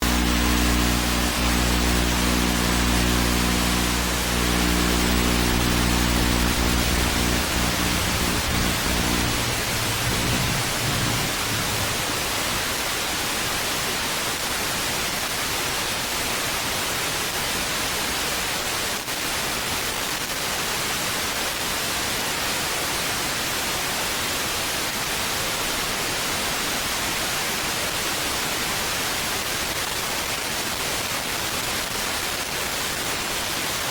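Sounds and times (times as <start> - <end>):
low steady hum: 0.0 - 12.6
loud steady hiss: 0.0 - 13.5.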